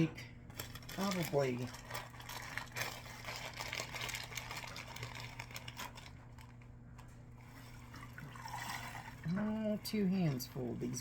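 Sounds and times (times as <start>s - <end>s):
plastic bag crinkling: 0.0s - 11.0s.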